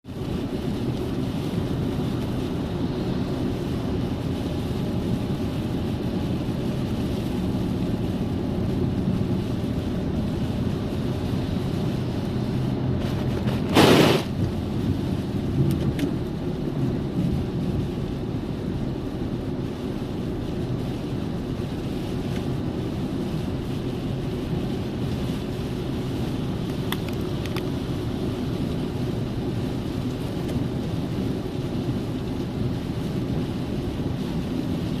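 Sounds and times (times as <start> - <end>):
steady rain: 0.0 - 35.0
wind rumble on microphone: 0.0 - 35.0
loud burst of noise: 13.7 - 14.4.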